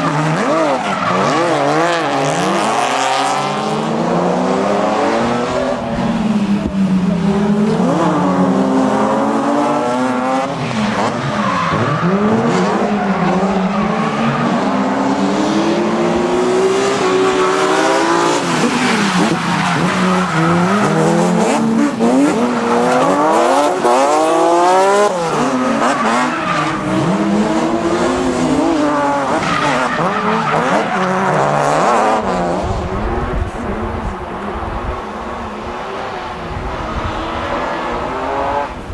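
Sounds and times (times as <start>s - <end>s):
car engine revving hard: 0.0s - 38.9s
tyres squealing: 24.9s - 32.2s.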